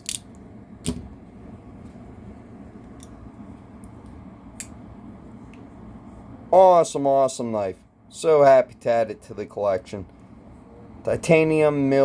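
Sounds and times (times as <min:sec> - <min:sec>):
folding knife blade clicking: 0:00.0 - 0:00.2.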